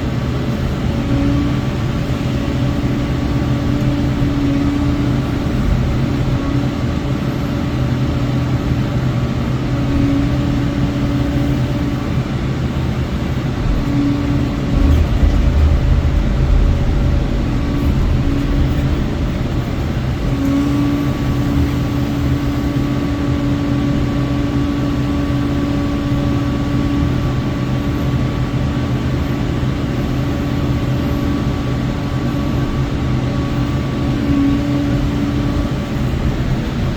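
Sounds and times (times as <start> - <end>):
excavator mulcher drone: 0.0 - 36.9
high machine whine: 0.0 - 36.9
heavy low machine surge: 13.6 - 22.3.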